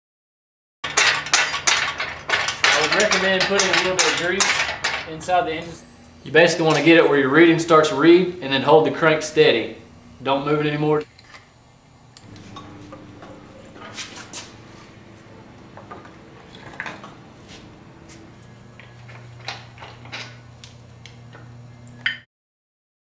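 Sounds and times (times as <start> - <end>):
metal tools clinking: 0.9 - 5.3, 12.2 - 20.8
steady low hum: 1.7 - 11.0, 11.7 - 22.0.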